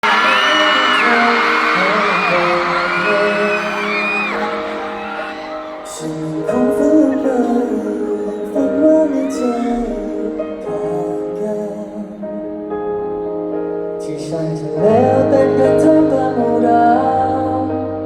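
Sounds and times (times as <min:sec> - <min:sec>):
crowd of fans screaming: 0:00.0 - 0:08.1, 0:08.8 - 0:10.3
live pop song: 0:00.0 - 0:18.0.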